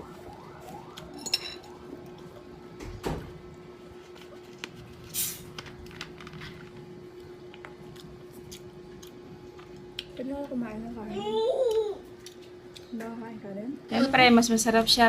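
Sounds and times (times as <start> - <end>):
steady low hum: 0.0 - 15.0
tableware clinking: 1.2 - 1.7.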